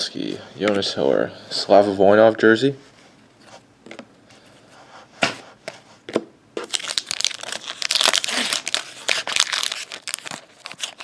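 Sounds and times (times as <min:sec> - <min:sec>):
wrapper tearing and crinkling: 0:06.6 - 0:11.0.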